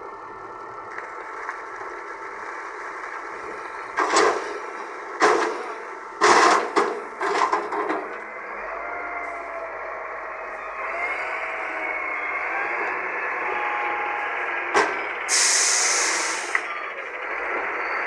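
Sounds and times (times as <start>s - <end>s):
heavy machine engine running: 0.0s - 18.0s
loud metallic bangs: 4.0s - 8.2s
wavering whine: 8.2s - 15.3s.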